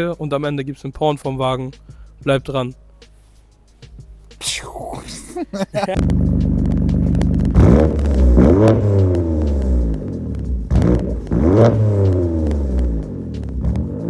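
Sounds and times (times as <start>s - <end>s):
car engine revving: 6.0s - 14.0s.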